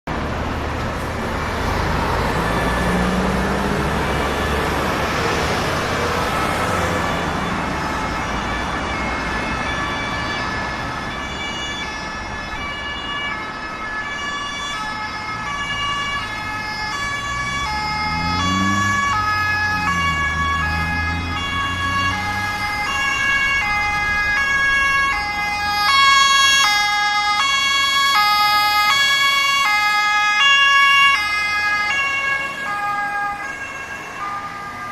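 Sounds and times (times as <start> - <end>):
street traffic noise: 0.0 - 34.9
ambulance two-tone siren: 1.4 - 34.9
vehicle engine revving: 16.4 - 26.2.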